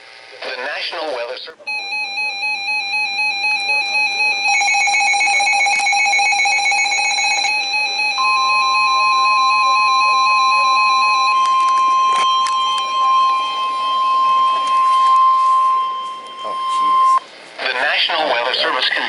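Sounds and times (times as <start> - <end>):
buzzing data header: 1.7 - 17.3
steady warning alarm tone: 1.7 - 17.3
repeating two-note tone: 7.1 - 17.2.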